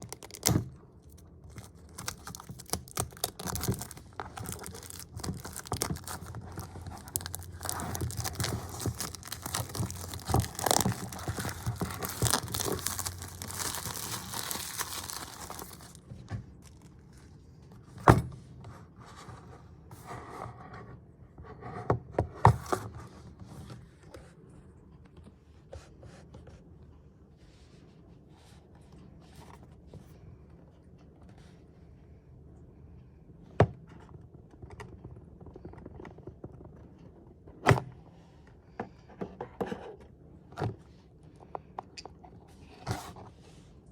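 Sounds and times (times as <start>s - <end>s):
packaging crinkling and tearing: 0.0s - 17.2s
box being handled: 1.5s - 16.0s.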